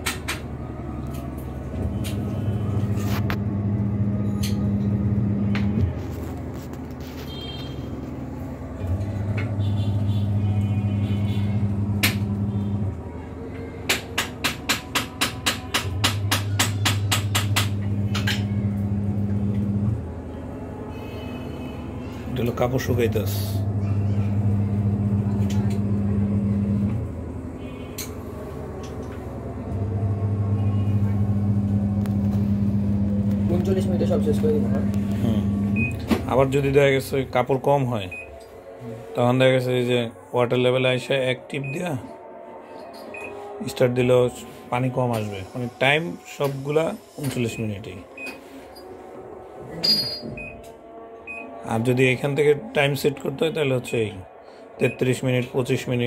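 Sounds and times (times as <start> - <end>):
washing machine motor humming: 0.0 - 6.6, 8.3 - 20.6, 22.2 - 38.2
washing machine clicks and knocks: 13.9 - 18.2.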